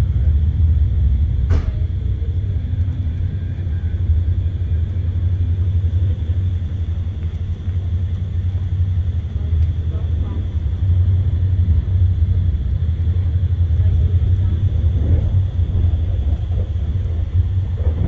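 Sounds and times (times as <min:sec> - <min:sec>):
wind buffeting microphone: 0:00.0 - 0:18.0
sharp click: 0:01.5 - 0:01.9.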